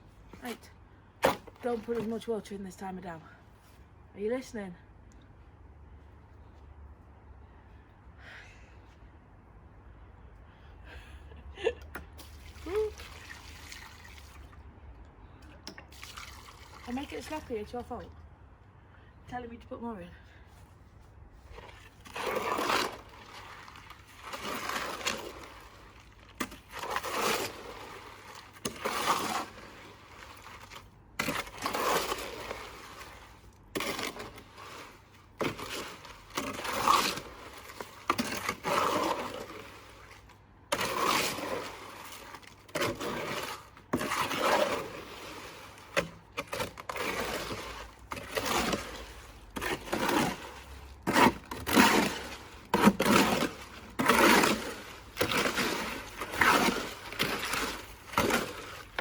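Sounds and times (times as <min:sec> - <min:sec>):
shovel scraping wet cement: 0:00.3 - 0:03.0, 0:16.0 - 0:18.1, 0:21.5 - 0:59.0.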